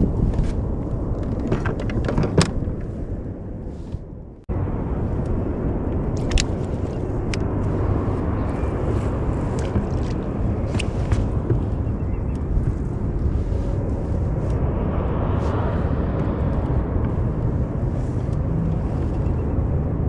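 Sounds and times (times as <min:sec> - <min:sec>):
wind rumble on microphone: 0:00.0 - 0:20.0
clicks and taps of gear handling: 0:06.2 - 0:07.4.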